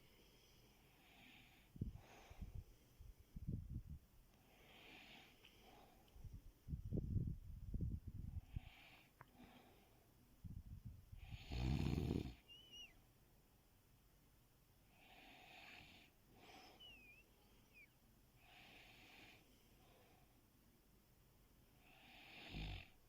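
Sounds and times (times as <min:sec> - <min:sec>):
person snoring: 0:11.2 - 0:12.4, 0:21.9 - 0:23.0
thin whistles in breaths: 0:12.4 - 0:13.0, 0:16.4 - 0:18.0.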